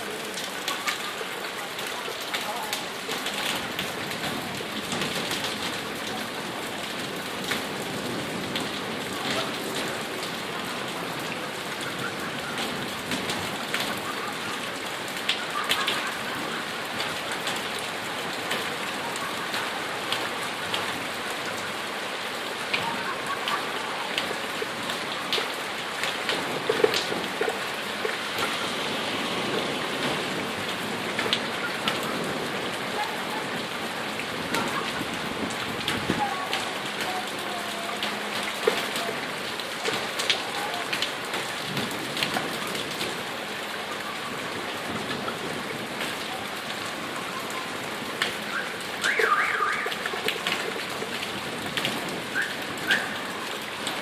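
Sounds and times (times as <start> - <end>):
heavy rain pouring: 0.0 - 54.0
raindrops ticking on hard surfaces: 0.0 - 54.0.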